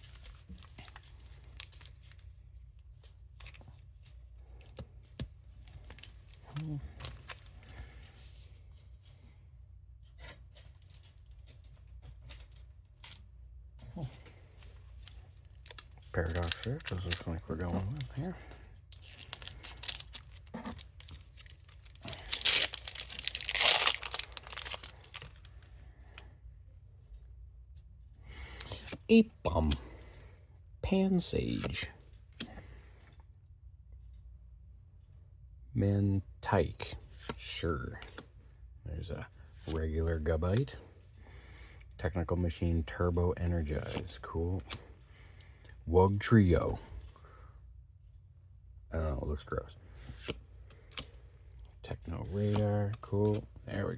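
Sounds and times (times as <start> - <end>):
cards and wrappers rustling: 0.0 - 9.2, 10.0 - 26.2, 49.9 - 53.9
low steady hum: 0.0 - 53.9
wrapper tearing and crinkling: 15.5 - 18.3, 18.9 - 25.4.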